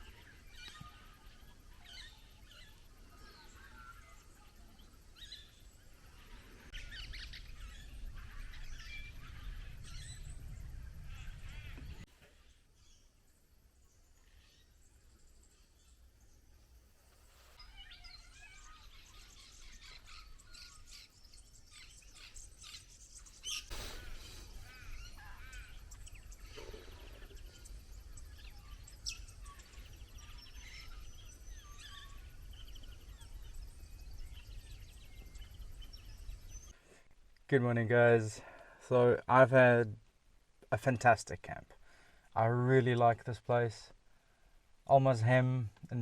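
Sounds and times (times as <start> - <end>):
birds chirping and calling: 0.0 - 13.1, 17.5 - 36.8
low wind rumble: 5.0 - 12.1, 20.2 - 36.7.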